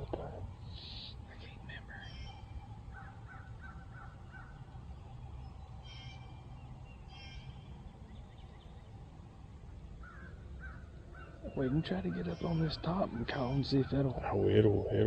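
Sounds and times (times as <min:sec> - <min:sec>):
low steady rumble: 0:00.0 - 0:15.0
songbird chirps: 0:00.0 - 0:15.0
crow cawing: 0:02.0 - 0:04.7, 0:05.8 - 0:06.4, 0:07.1 - 0:07.7, 0:10.0 - 0:14.2.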